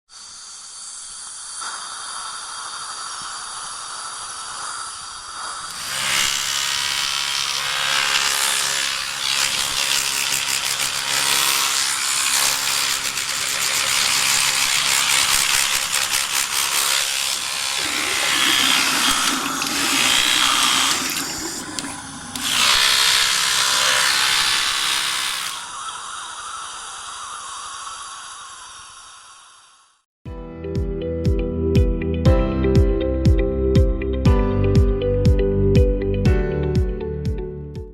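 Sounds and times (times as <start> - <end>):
loud hissing: 0.1 - 5.8, 17.2 - 30.0
dental handpiece whine: 7.6 - 29.6
low buzz: 17.6 - 25.8.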